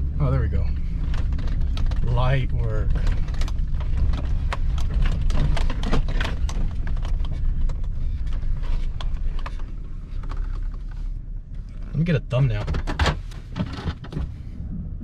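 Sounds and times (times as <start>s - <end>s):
pickup engine and road rumble: 0.0s - 15.0s
knocks and clatters of stones: 2.8s - 10.8s.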